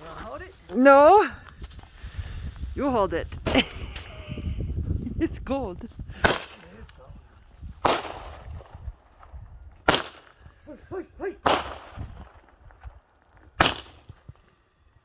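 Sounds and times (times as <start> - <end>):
fireworks bangs with echo: 6.1 - 6.8, 7.7 - 10.4, 11.4 - 14.3.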